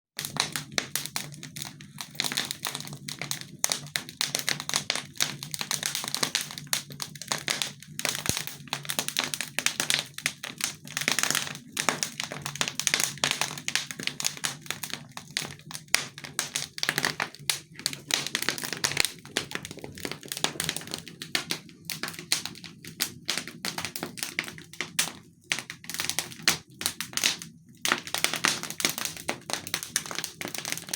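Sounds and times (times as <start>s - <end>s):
wood fire crackling: 0.2s - 30.9s.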